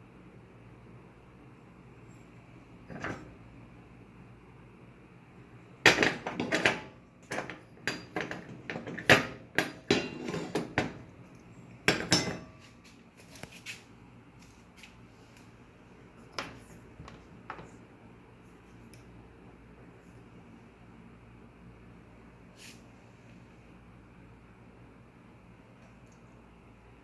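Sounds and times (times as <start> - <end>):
metal clattering and knocking: 5.9 - 11.1, 11.9 - 12.6.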